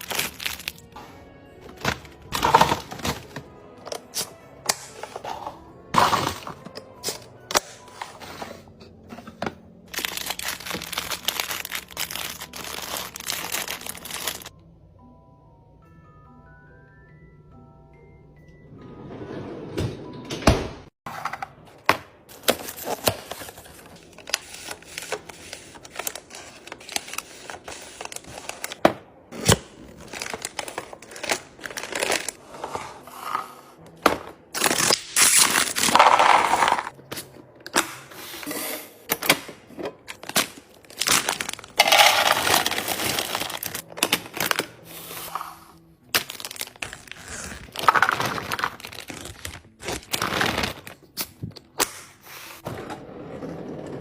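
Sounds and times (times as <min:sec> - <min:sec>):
plastic wrappers crinkling: 0:00.0 - 0:00.8, 0:09.9 - 0:14.5, 0:22.5 - 0:28.8, 0:29.8 - 0:32.4, 0:40.1 - 0:45.2, 0:46.1 - 0:51.2.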